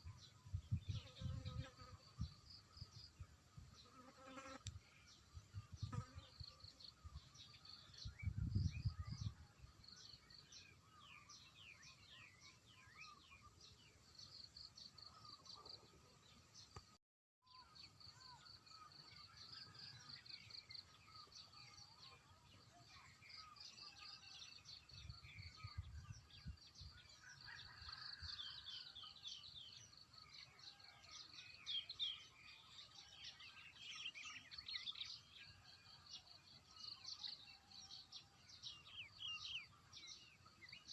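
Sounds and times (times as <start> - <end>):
low rumbles on microphone: 8.1 - 9.4.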